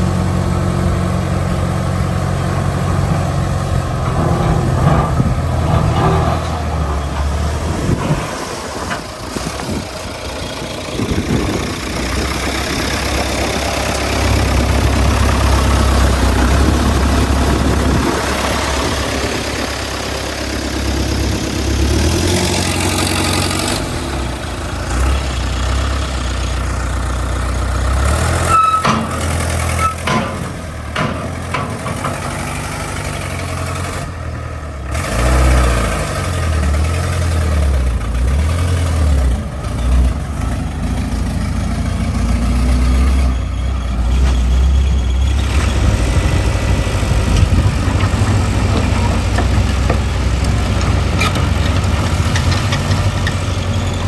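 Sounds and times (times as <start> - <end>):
diesel engine rumbling: 0.0 - 54.0
sharp metallic knocks: 28.5 - 33.1.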